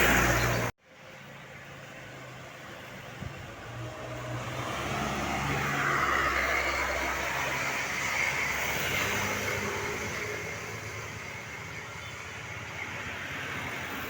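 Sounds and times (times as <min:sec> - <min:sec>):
vehicle driving past: 0:03.6 - 0:11.3.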